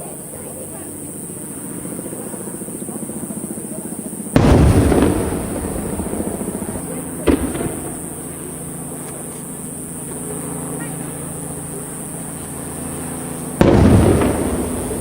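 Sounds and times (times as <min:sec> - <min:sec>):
firework shells booming: 0:04.3 - 0:10.1, 0:12.0 - 0:15.0
sharp firework bang: 0:04.4 - 0:08.6, 0:13.6 - 0:15.0.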